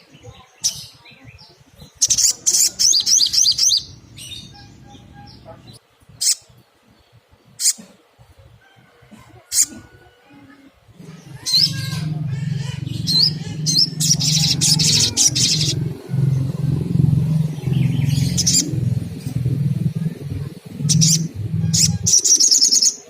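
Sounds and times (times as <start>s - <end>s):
bird chirps and trills: 0.5s - 6.6s, 11.0s - 23.0s
rough low fluttering hum: 3.2s - 5.8s, 10.9s - 22.8s.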